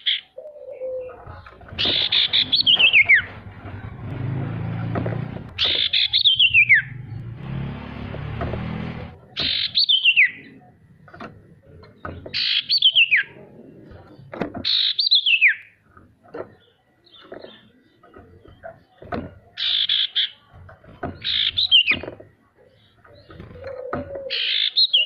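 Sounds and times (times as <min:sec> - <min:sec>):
bird chirps: 0:00.0 - 0:03.5, 0:05.6 - 0:07.2, 0:09.4 - 0:11.0, 0:11.9 - 0:20.5, 0:21.2 - 0:25.0
bird whistling trilling calls: 0:01.8 - 0:03.3, 0:05.6 - 0:07.0, 0:09.4 - 0:10.5, 0:12.4 - 0:13.4, 0:14.7 - 0:15.8, 0:24.3 - 0:25.0.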